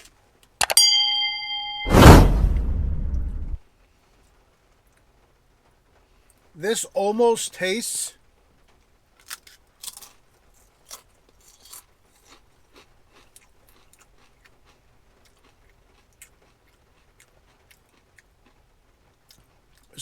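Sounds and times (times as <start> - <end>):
person chewing crunchy chip: 9.2 - 20.0.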